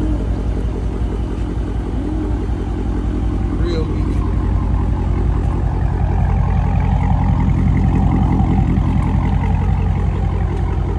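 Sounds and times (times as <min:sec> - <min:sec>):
car engine running: 0:00.0 - 0:10.9.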